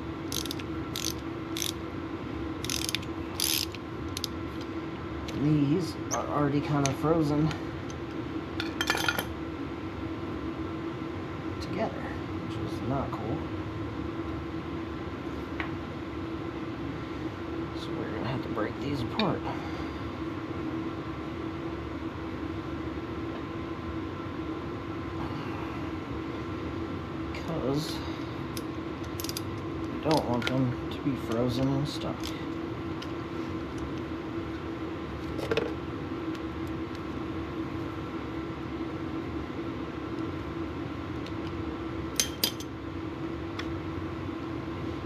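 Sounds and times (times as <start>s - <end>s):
steady machine hum: 0.0s - 45.0s
metal parts clinking: 0.3s - 1.7s, 2.6s - 3.8s, 29.1s - 29.5s, 42.2s - 42.7s.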